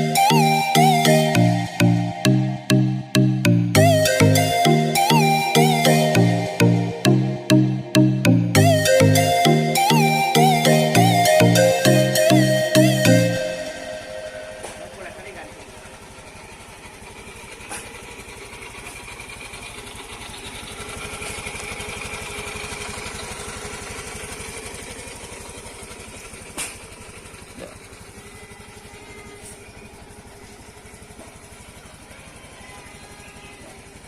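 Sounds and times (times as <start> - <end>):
motorcycle engine idling: 14.5 - 34.0.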